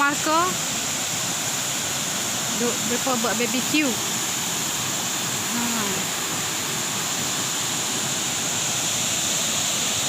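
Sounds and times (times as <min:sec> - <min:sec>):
waterfall roaring: 0:00.0 - 0:10.0.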